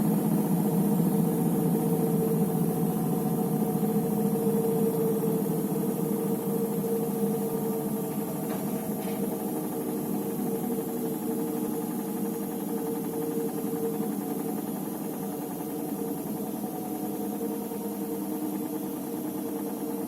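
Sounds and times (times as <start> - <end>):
washing machine motor hum: 0.0 - 20.0.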